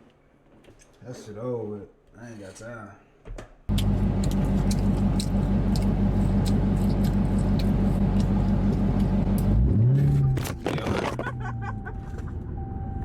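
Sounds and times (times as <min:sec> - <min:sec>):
car engine droning: 0:03.7 - 0:13.0.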